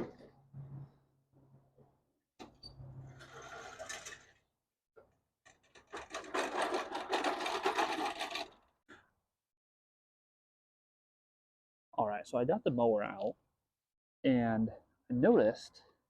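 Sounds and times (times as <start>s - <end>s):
lawn mower rattling and scraping: 3.2s - 4.3s, 5.7s - 8.6s.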